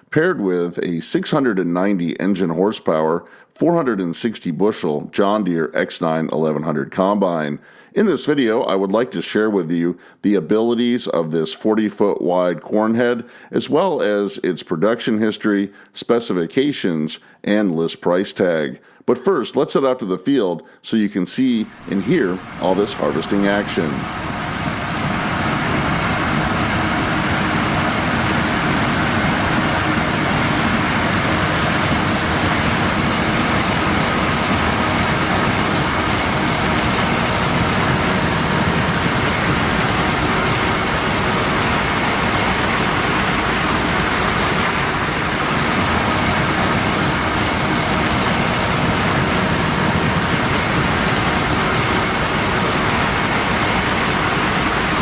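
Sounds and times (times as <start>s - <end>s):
combine harvester running: 21.8s - 55.0s.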